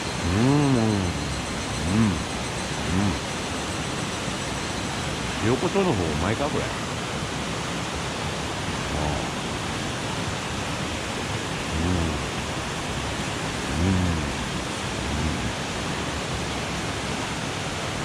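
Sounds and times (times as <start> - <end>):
man humming while eating: 0.1 - 3.2, 8.8 - 9.4, 11.6 - 12.4, 13.6 - 15.7.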